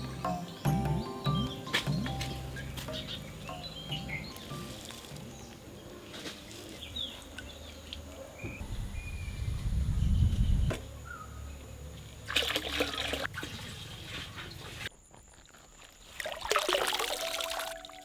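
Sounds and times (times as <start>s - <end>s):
bird chirps: 0.0s - 6.0s
low rumble: 8.6s - 11.0s
water trickling: 16.0s - 18.0s.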